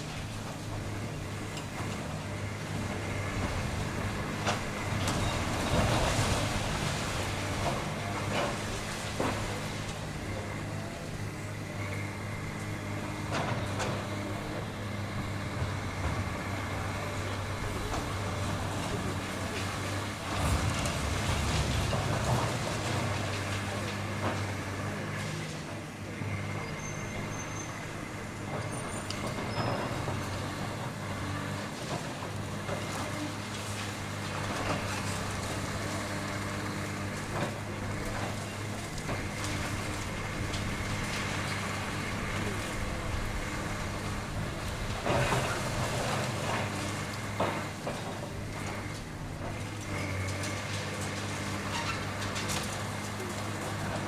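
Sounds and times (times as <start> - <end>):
diesel engine humming: 0.0 - 54.0
debris crashing and clanking: 3.4 - 10.1, 17.9 - 24.5.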